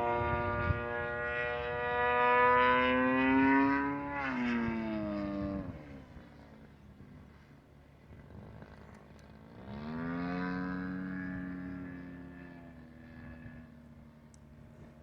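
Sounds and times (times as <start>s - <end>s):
model airplane engine passing: 0.0s - 15.0s.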